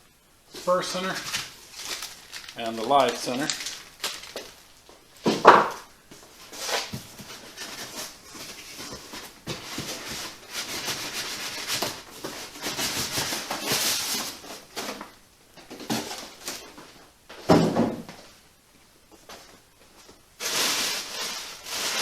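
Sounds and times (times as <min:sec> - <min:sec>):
packing material rustling: 0:00.5 - 0:15.0, 0:20.4 - 0:22.0.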